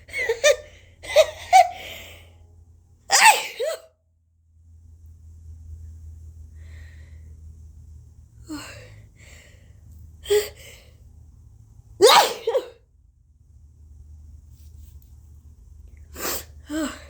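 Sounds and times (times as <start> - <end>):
woman sneezing: 3.1 - 3.9, 12.0 - 12.8.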